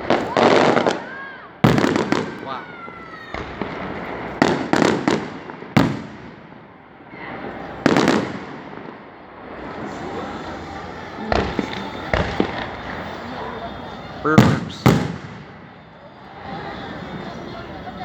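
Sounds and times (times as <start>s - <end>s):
fireworks booming with echo: 0.0s - 18.0s.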